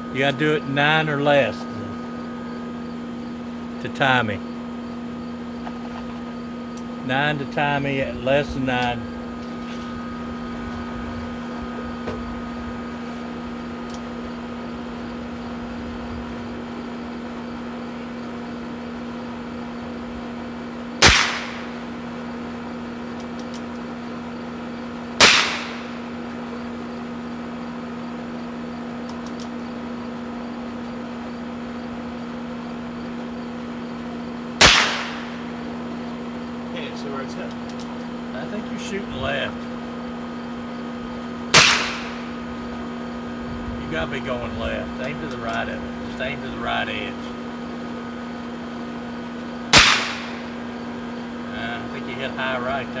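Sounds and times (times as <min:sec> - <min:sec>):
steady low hum: 0:00.0 - 0:53.0
revolver shots: 0:21.0 - 0:21.9, 0:25.2 - 0:26.1, 0:34.6 - 0:35.6, 0:41.5 - 0:42.4, 0:49.7 - 0:50.6.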